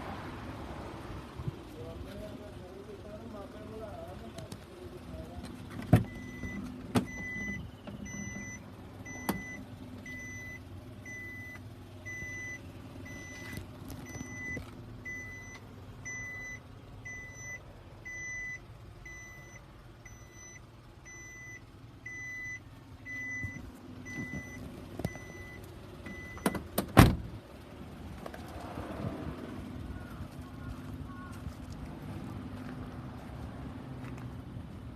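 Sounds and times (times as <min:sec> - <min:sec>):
low engine hum: 0:00.0 - 0:34.9
truck warning beeper: 0:06.0 - 0:26.6.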